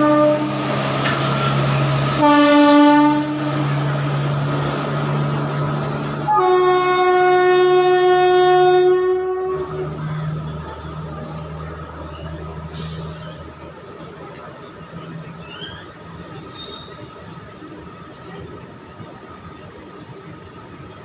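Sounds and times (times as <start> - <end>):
locomotive horn blasts: 0.0 - 0.7, 2.1 - 3.8, 6.2 - 10.0
low train rumble: 0.0 - 21.0.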